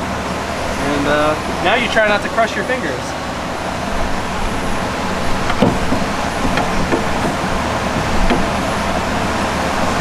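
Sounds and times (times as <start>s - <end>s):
metal engine parts knocking: 4.5s - 10.0s.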